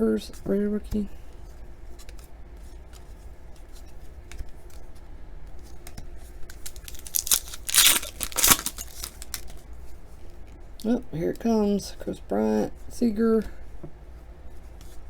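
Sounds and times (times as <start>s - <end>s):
cards clicking and rustling: 6.6s - 9.6s
plastic wrapper tearing and crinkling: 6.6s - 9.6s.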